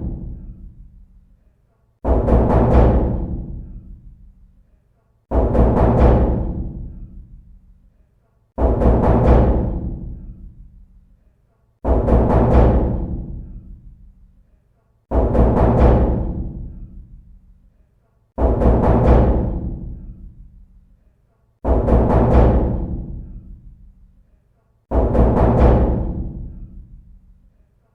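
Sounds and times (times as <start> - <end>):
heavy knocking on door: 2.0 - 4.0, 5.3 - 7.2, 8.6 - 10.4, 11.8 - 13.7, 15.1 - 17.0, 18.4 - 20.2, 21.6 - 23.6, 24.9 - 26.9.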